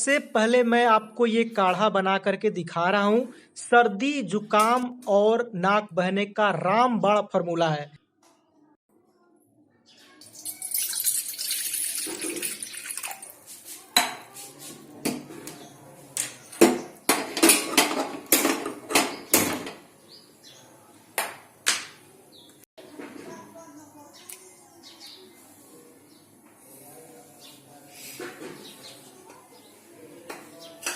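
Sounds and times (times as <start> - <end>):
water pouring into a vessel: 10.2 - 13.4
kitchen utensils and pots clinking: 10.2 - 14.4, 16.6 - 19.8.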